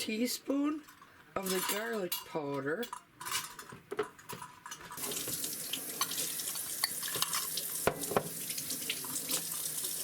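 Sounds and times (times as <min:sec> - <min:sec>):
water running from a tap: 0:05.0 - 0:10.0.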